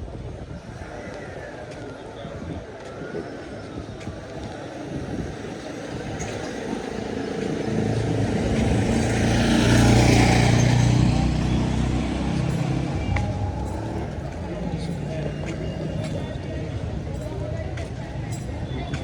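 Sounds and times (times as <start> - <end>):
vehicle driving past: 5.8 - 16.4.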